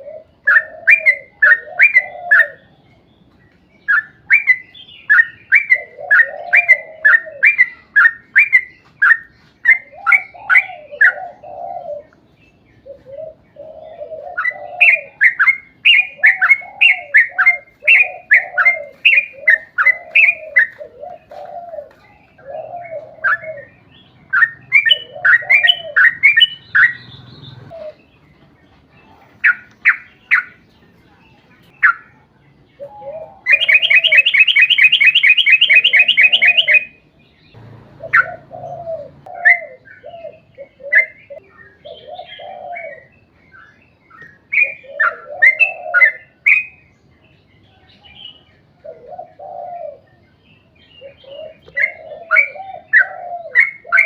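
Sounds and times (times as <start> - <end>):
bird chirping and trilling: 0.0 - 21.4, 22.3 - 28.4, 29.4 - 30.8, 31.6 - 46.9
low rounded bird notes: 31.6 - 54.0.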